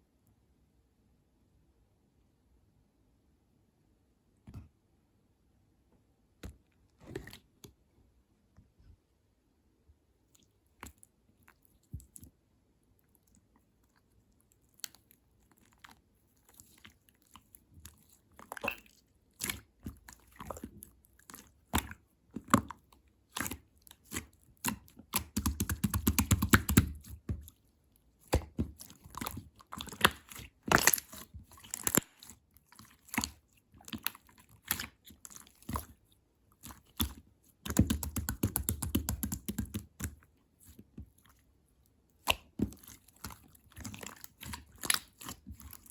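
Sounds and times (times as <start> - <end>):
slime squished by hand: 13.4 - 41.5, 42.1 - 45.9.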